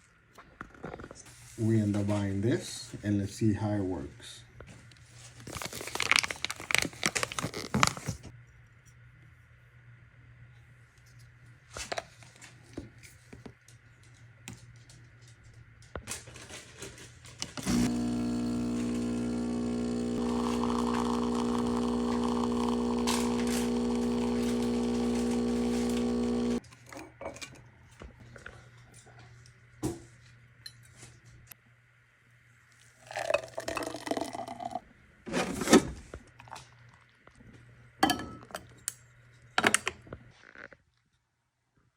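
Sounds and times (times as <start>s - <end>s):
espresso machine pump humming: 17.6s - 26.6s.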